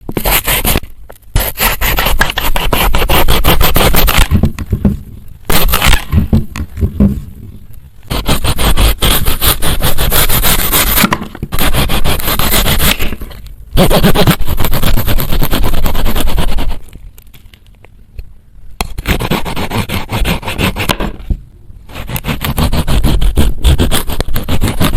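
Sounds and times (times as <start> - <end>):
plastic knife sawing through apple: 1.4 - 4.4, 8.1 - 11.0, 11.6 - 13.1, 13.8 - 16.8, 19.0 - 21.2, 21.9 - 24.9.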